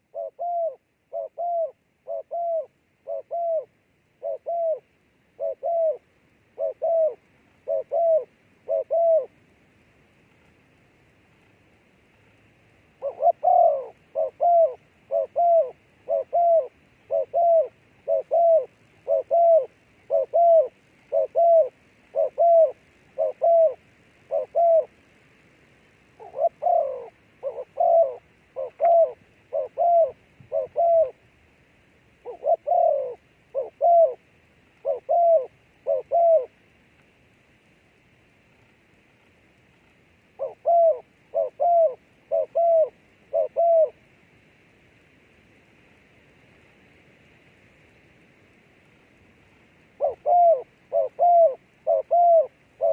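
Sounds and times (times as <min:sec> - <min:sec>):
dove cooing: 0:00.0 - 0:09.4, 0:12.9 - 0:25.0, 0:26.2 - 0:31.2, 0:32.2 - 0:36.6, 0:40.3 - 0:44.0, 0:50.0 - 0:52.9.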